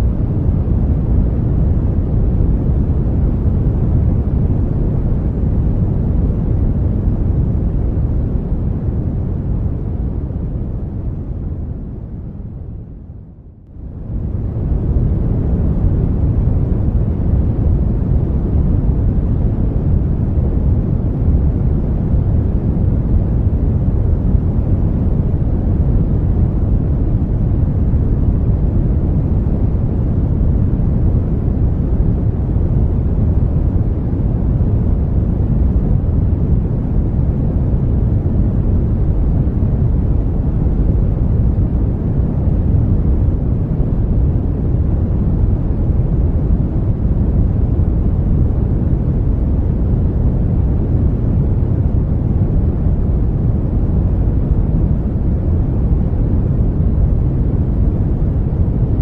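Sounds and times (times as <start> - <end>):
brown noise rush: 0.0 - 59.0.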